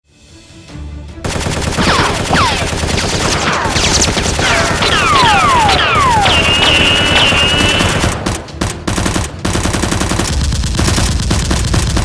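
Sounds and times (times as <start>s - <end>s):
rapid machine-gun fire: 1.2s - 12.0s
high falling whistles: 4.9s - 8.0s.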